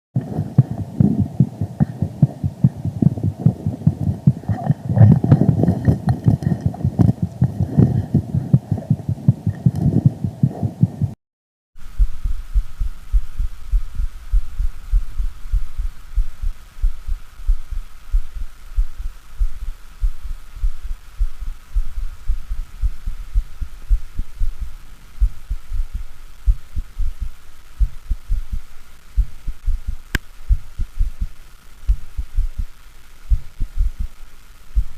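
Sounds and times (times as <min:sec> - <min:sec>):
faint steady hum: 0:00.2 - 0:11.2, 0:11.8 - 0:34.9
low thumping heartbeats: 0:00.2 - 0:11.2, 0:11.8 - 0:34.2.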